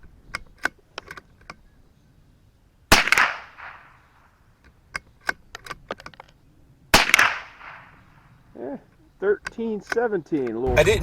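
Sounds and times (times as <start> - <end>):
rifle shot: 2.9 - 4.0, 6.9 - 8.0.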